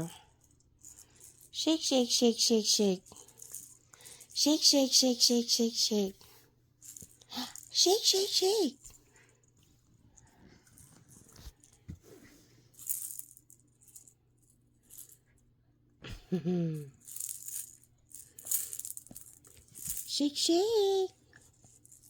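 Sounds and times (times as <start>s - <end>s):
toy shaker rattling: 0.0s - 9.5s, 12.7s - 14.2s, 14.8s - 15.3s, 16.8s - 22.0s.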